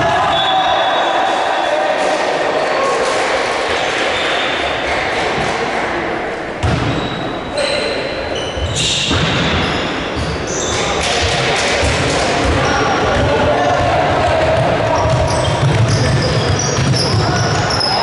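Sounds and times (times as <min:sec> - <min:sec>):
spectators' voices: 0:00.0 - 0:06.6, 0:09.9 - 0:18.0
shoe squeaks: 0:07.0 - 0:11.0, 0:14.9 - 0:18.0
basketball bouncing on court: 0:11.2 - 0:18.0.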